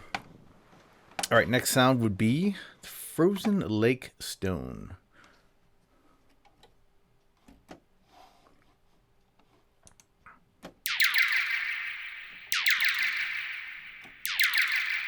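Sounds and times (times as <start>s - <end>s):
ringing ice chirps: 10.9s - 15.0s.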